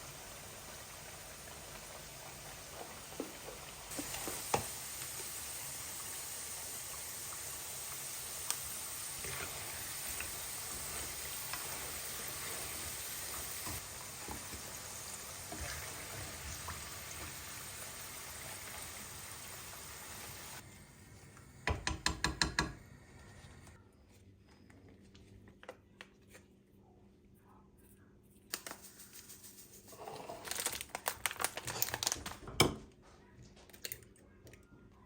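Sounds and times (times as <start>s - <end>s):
food sizzling in hot oil: 0.0s - 20.8s.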